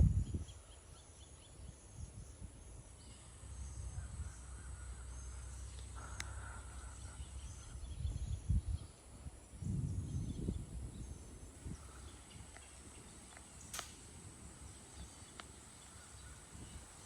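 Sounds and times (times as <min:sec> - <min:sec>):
wind buffeting microphone: 0:00.0 - 0:00.8, 0:06.9 - 0:17.0
faint bird chirps: 0:00.0 - 0:13.8, 0:14.6 - 0:17.0.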